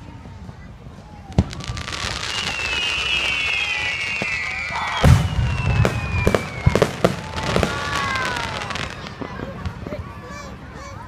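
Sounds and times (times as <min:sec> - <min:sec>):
firework whistles: 0:01.3 - 0:09.7
firework pops and crackles: 0:01.3 - 0:10.2
loud firework bang: 0:01.4 - 0:09.8.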